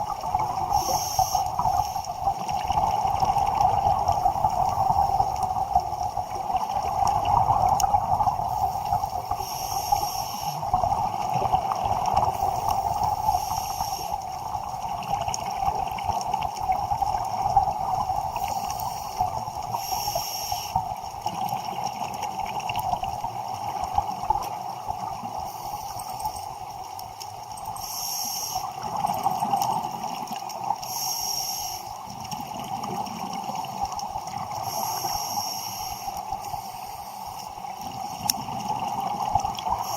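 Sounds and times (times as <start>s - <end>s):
gurgling exhaled bubbles: 0.0s - 19.8s
muffled water noise: 0.0s - 39.9s
regulator hissing inhalations: 0.7s - 2.0s, 9.3s - 10.6s, 12.4s - 14.2s, 18.4s - 20.8s, 27.8s - 28.8s, 30.8s - 31.9s, 34.6s - 37.5s.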